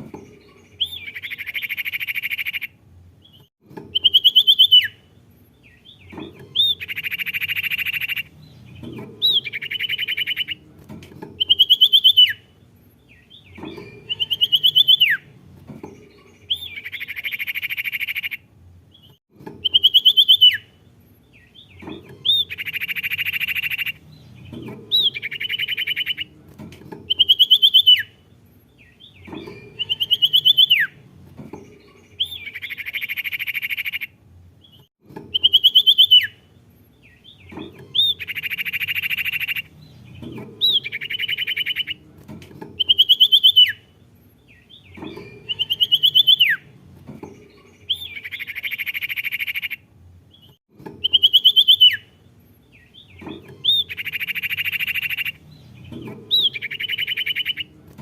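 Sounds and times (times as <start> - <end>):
songbird whistle and buzzy trill: 3.9 - 5.8, 35.3 - 36.5, 42.8 - 43.9, 44.6 - 46.7, 51.0 - 52.2.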